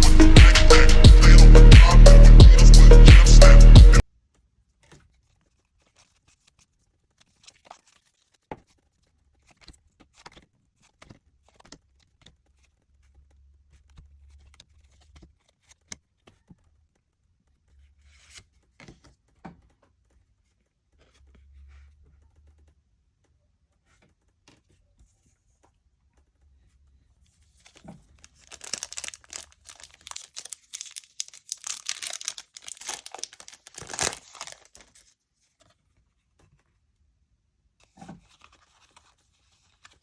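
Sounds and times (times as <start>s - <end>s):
cards clicking and scraping: 27.7s - 35.0s
foil pack tearing and crinkling: 28.2s - 35.0s.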